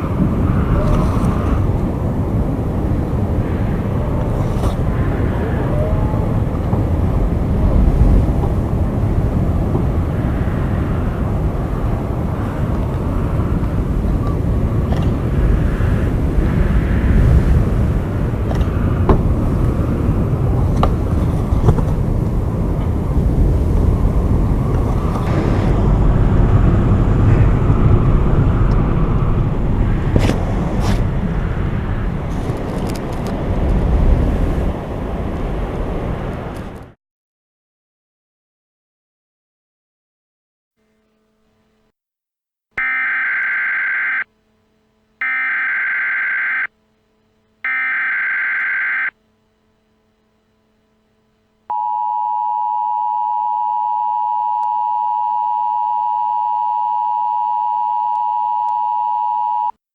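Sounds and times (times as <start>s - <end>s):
low rumbling roar with hiss: 0.0s - 36.8s.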